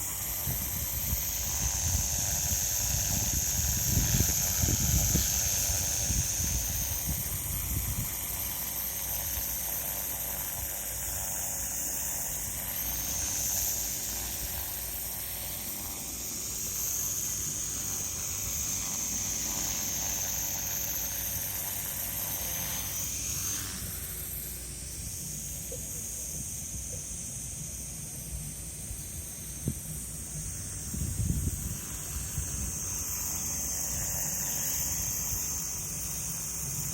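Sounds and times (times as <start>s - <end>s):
toy helicopter rotor whine: 0.0s - 36.9s
wind rumbling on microphone: 0.3s - 8.4s, 30.8s - 33.1s.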